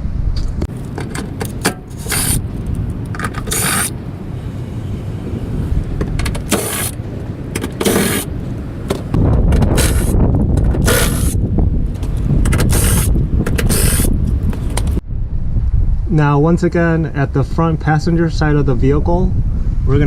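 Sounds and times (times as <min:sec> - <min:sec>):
steady low rumble: 0:00.0 - 0:20.0
tool clicks: 0:08.9 - 0:11.4, 0:12.0 - 0:14.1.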